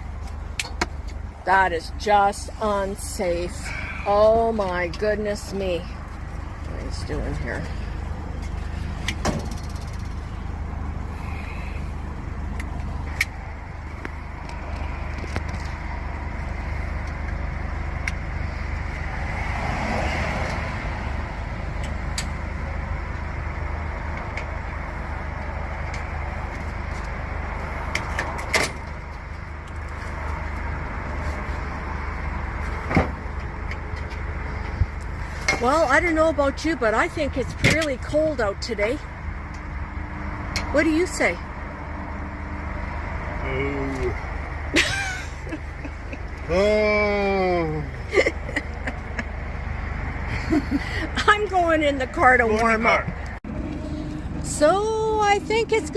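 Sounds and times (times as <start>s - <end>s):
engine idling: 0.0s - 19.2s
sharp clicks and knocks: 0.2s - 1.2s, 8.4s - 10.3s.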